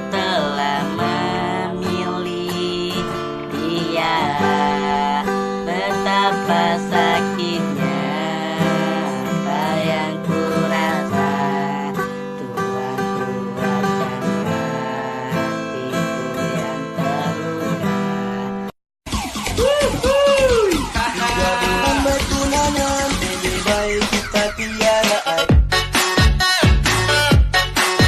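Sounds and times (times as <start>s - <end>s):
person singing: 0.0s - 18.8s, 19.4s - 28.0s
strummed acoustic guitar: 0.0s - 28.0s.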